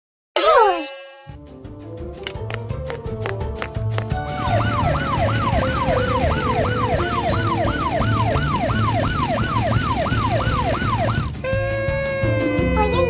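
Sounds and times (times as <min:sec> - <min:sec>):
cartoon siren wailing: 0:04.3 - 0:12.8.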